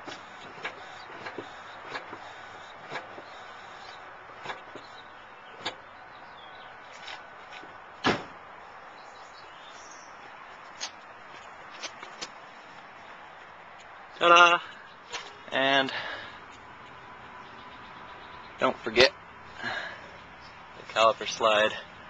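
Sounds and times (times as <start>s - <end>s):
car door shutting: 8.0s - 8.4s.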